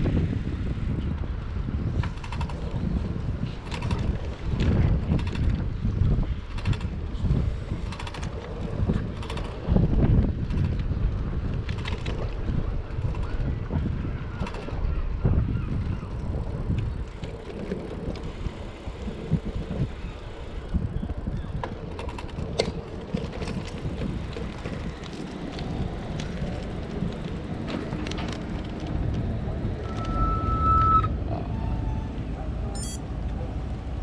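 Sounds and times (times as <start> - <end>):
wind buffeting microphone: 0.0 - 32.6
short high beep: 29.8 - 31.1, 32.8 - 33.0.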